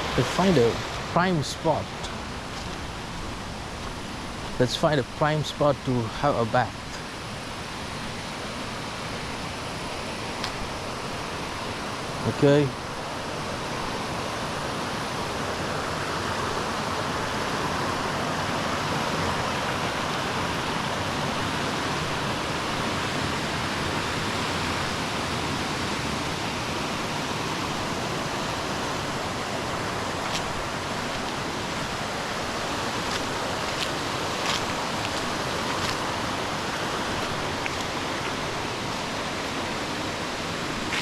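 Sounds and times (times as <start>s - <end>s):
waterfall rushing: 0.0s - 41.0s.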